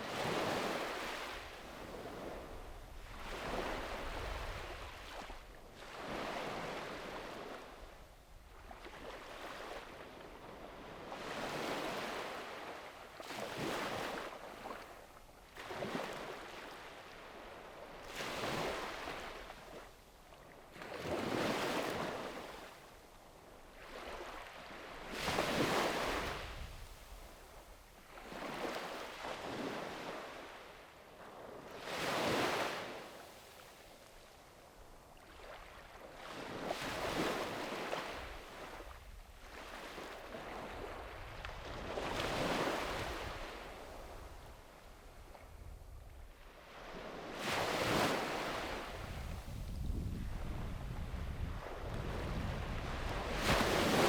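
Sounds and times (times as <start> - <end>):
small waves breaking on beach: 0.0 - 54.0.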